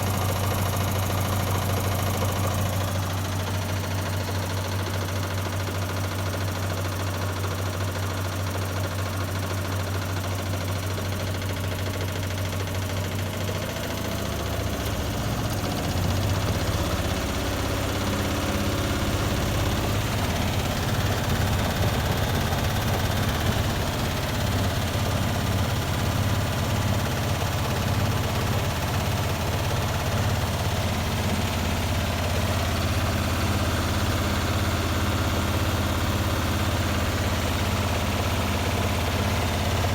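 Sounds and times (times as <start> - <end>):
washing machine motor hum: 0.0 - 4.1, 13.6 - 39.9.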